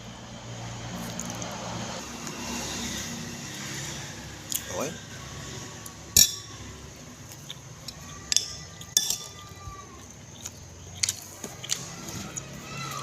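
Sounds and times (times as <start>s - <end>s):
cutlery clinking against plate: 6.2s - 6.6s, 7.9s - 9.4s.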